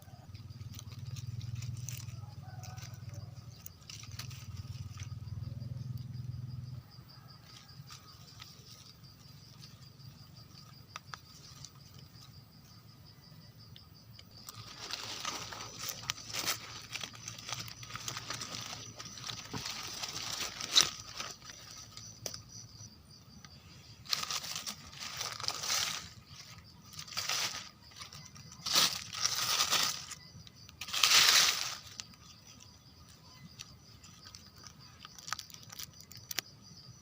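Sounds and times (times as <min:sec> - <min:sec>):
crinkling and rustling: 0:00.0 - 0:05.5, 0:07.2 - 0:12.4, 0:14.2 - 0:22.8, 0:23.4 - 0:36.5.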